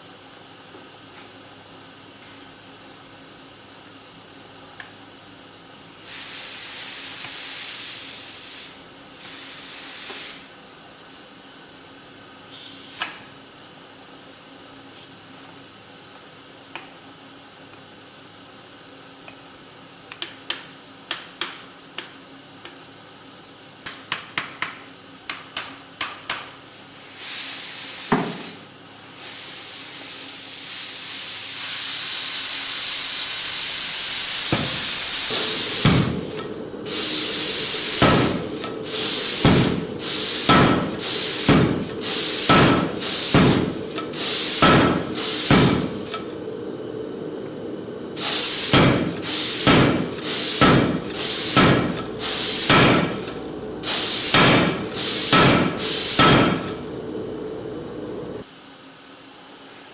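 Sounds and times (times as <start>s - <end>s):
loud hiss: 5.8s - 10.5s, 12.5s - 13.1s, 26.9s - 58.4s
machine running hum: 34.4s - 58.5s
power hammer knocks and blows: 34.5s - 36.5s, 37.8s - 46.2s, 48.6s - 56.9s
sharp knocks: 54.3s - 56.7s.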